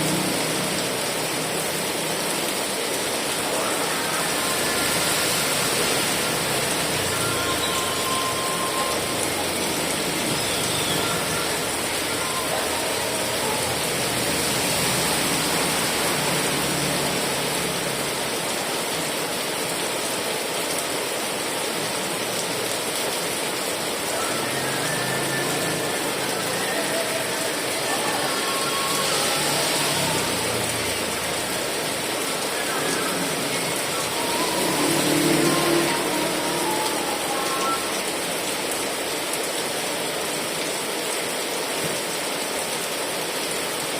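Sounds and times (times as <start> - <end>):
heavy rain falling: 0.0 - 43.9.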